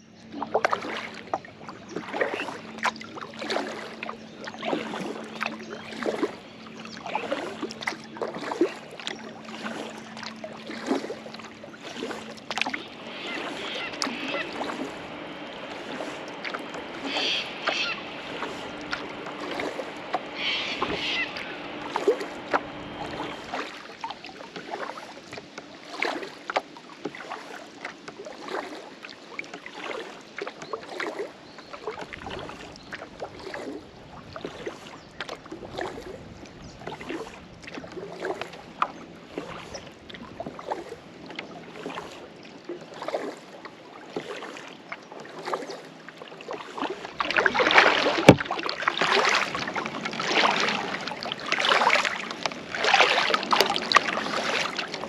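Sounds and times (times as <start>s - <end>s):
paddle splashing in water: 0.0s - 55.0s
knocks against boat: 47.2s - 51.1s.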